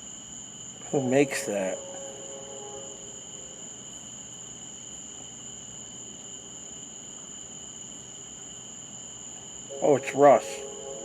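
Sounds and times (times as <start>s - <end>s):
insects droning: 0.0s - 11.0s
faint low hiss: 0.8s - 4.3s, 9.3s - 11.0s.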